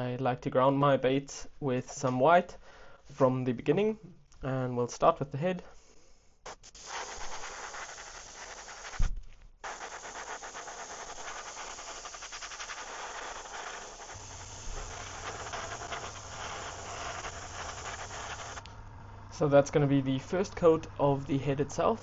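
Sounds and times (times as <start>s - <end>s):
airbrush spraying hiss: 6.4s - 18.7s
thump: 9.0s - 9.3s
low hum: 13.3s - 22.0s.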